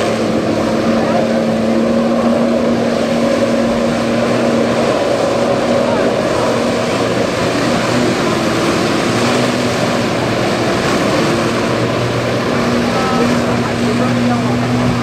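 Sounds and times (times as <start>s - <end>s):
engine running: 0.0s - 15.0s
loud rushing noise: 0.0s - 15.0s
low hum: 0.0s - 15.0s.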